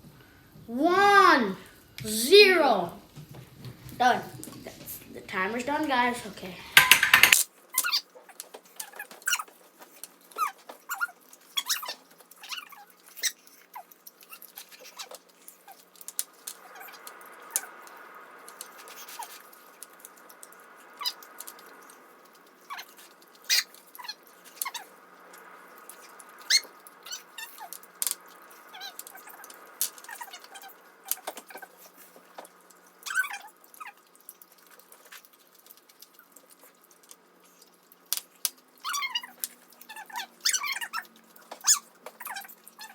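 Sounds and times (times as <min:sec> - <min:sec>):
chewing and lip smacking: 0:20.0 - 0:42.9.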